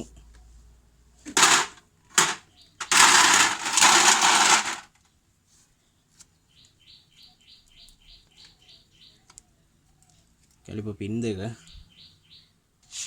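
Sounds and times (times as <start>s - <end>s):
tool scraping: 1.3s - 4.9s.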